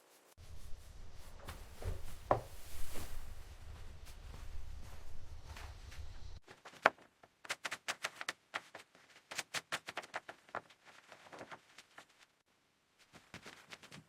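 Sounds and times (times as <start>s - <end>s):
low rumble: 3.1s - 6.4s.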